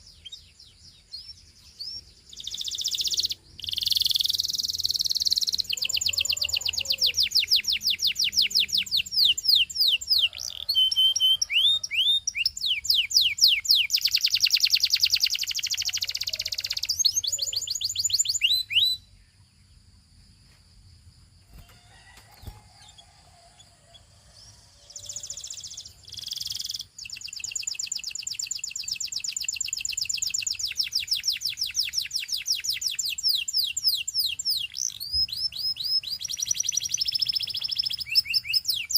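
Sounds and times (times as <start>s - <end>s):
canary singing trills: 0.0s - 19.5s, 21.5s - 38.9s.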